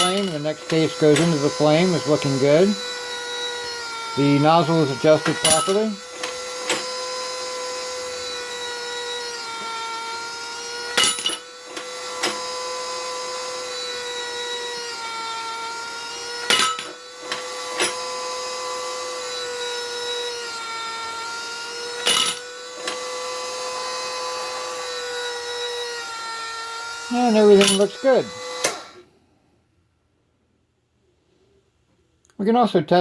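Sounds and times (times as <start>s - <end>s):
metal cases clattering: 0.0s - 0.5s
machine whine: 0.0s - 29.0s.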